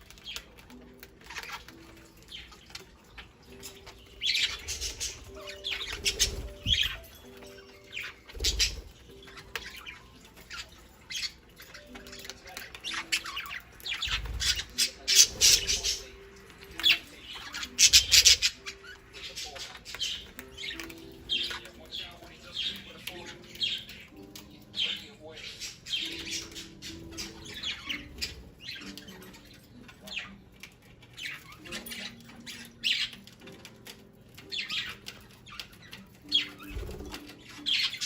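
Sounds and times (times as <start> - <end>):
budgerigars squawking and chirping: 0.0 - 38.0.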